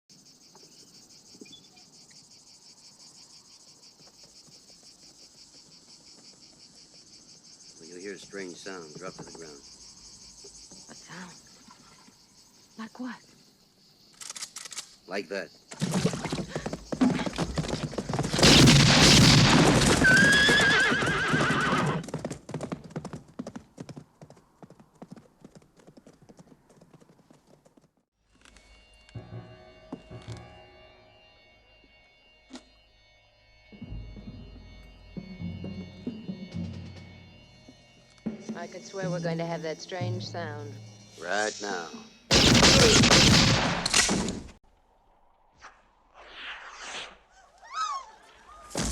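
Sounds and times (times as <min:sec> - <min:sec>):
crickets chirping: 0:00.1 - 0:22.0, 0:33.7 - 0:43.0
horses galloping: 0:15.8 - 0:28.1
horse whinnying: 0:19.8 - 0:22.1, 0:47.3 - 0:48.7.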